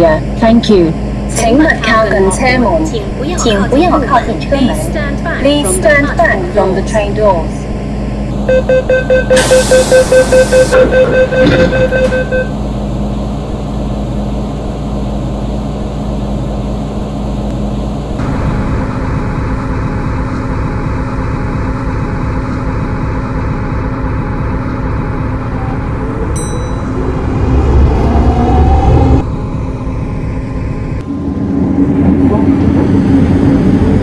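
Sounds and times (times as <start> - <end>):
train running noise: 0.0 - 34.0
door-closing warning beeps: 8.5 - 12.6.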